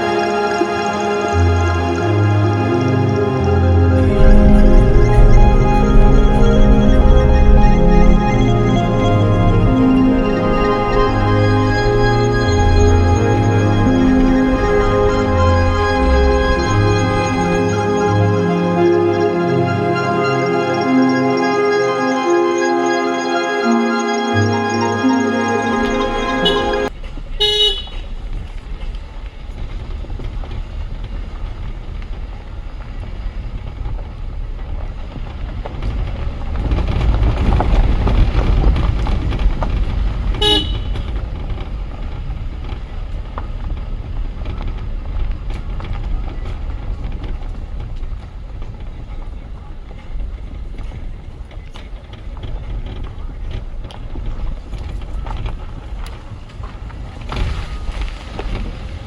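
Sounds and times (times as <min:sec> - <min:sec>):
vehicle road rumble: 0:00.0 - 0:22.4, 0:24.5 - 0:59.0
short horn toot: 0:26.3 - 0:28.1, 0:40.4 - 0:41.1.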